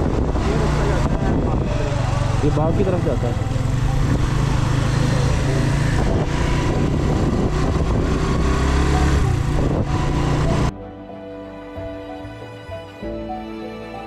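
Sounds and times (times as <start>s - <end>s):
motorcycle engine running: 0.0s - 10.7s
wind and road noise: 0.0s - 10.7s.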